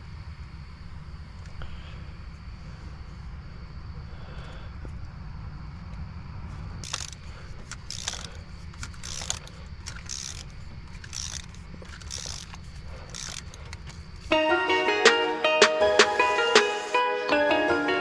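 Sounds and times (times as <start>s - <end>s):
steady low hum: 0.0s - 14.7s
ratchet wrench clicking: 6.8s - 14.3s.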